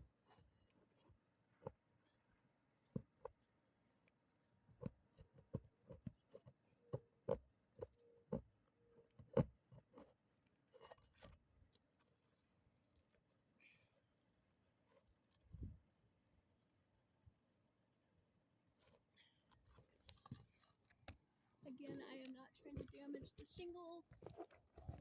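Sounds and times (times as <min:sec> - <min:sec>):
metal pry tool scraping shingles: 0:09.2 - 0:11.8.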